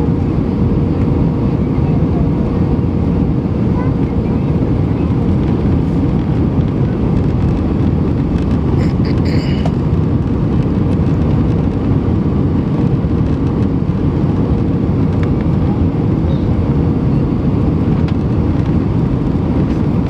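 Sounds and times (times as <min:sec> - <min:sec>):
airplane cabin engine rumble: 0:00.0 - 0:20.0.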